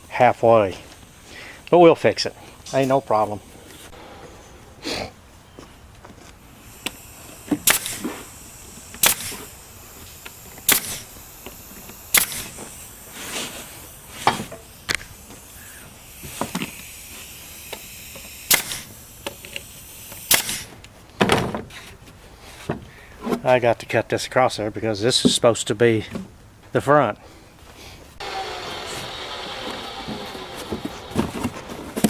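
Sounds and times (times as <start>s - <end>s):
faint hiss: 0.0s - 20.8s.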